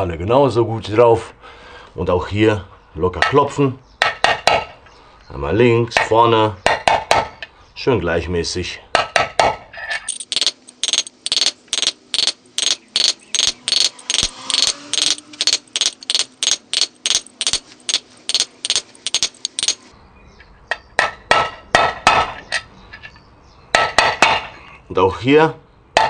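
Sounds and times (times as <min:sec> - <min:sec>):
hammer tapping on metal: 0:09.0 - 0:19.8.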